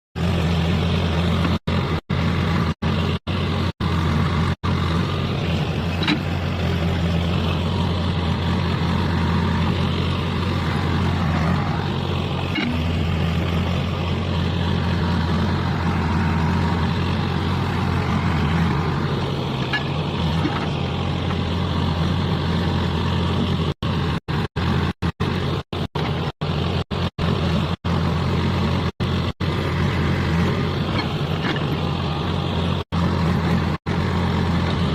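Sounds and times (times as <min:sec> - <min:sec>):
diesel engine humming: 0:00.2 - 0:34.9.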